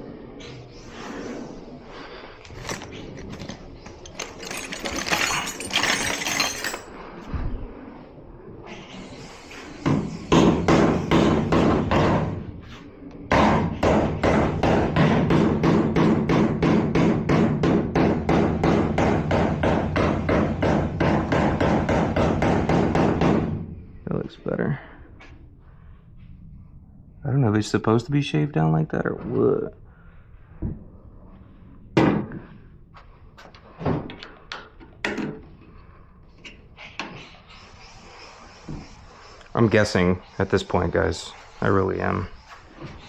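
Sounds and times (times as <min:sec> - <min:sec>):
scraping and handling noises: 0:02.4 - 0:07.0.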